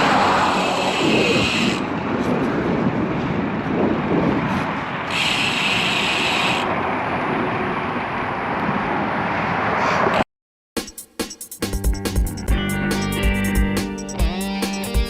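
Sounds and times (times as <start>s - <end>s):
motor vehicle passing: 0.0s - 10.2s
wind and road noise: 0.0s - 10.3s.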